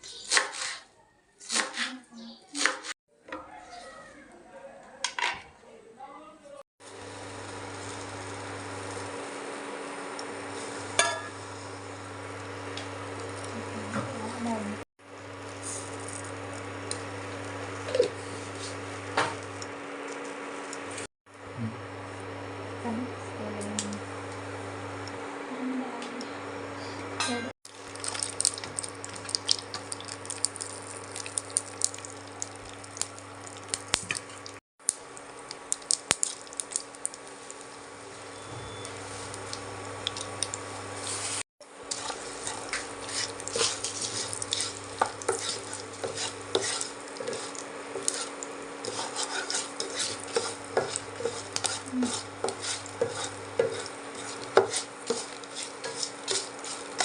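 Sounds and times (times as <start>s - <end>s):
low sizzle of frying: 6.8s - 57.0s
spoon scraping metal pan: 41.9s - 57.0s.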